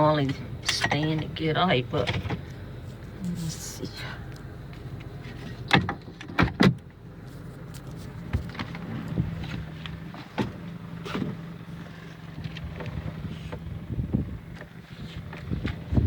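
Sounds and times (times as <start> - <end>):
car engine idling: 0.0 - 16.0
car door clicks and knocks: 5.6 - 6.9.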